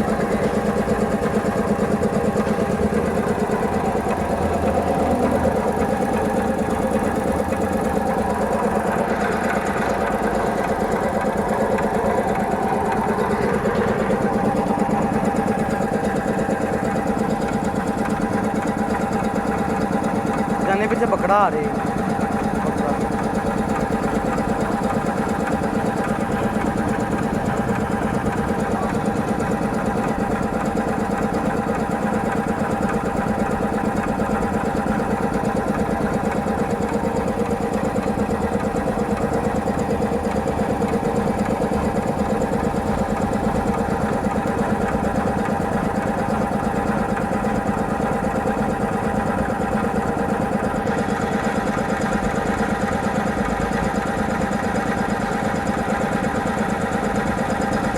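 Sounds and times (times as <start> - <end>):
air compressor running: 0.0 - 57.9.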